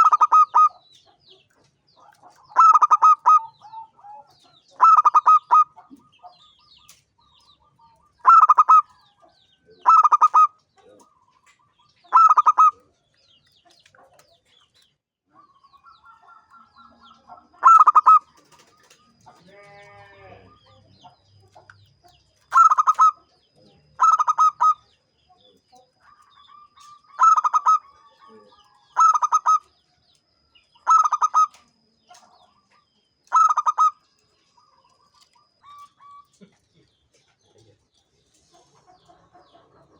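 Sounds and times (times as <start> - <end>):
dove trilled cooing: 0.0 - 1.1, 2.0 - 7.0, 7.7 - 12.9, 15.4 - 19.3, 22.4 - 25.0, 26.0 - 29.8, 30.7 - 36.6.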